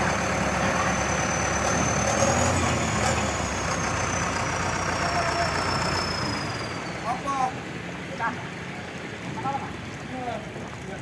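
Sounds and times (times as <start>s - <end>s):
heavy diesel engine running: 0.0s - 8.1s.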